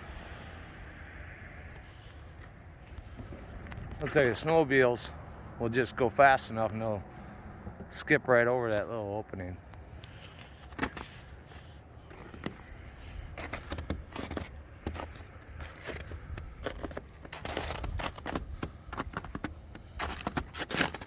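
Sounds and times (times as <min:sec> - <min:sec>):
footsteps crunching in snow: 0:01.8 - 0:07.2, 0:09.8 - 0:21.0
low rumble of microphone handling: 0:02.8 - 0:05.6.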